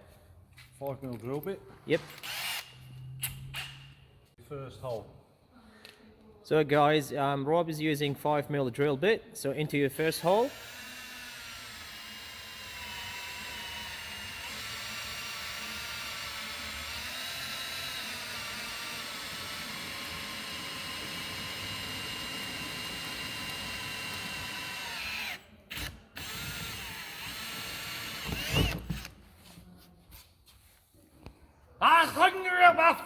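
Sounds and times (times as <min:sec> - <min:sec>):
power drill drilling into metal: 0:02.2 - 0:02.8, 0:10.2 - 0:29.1.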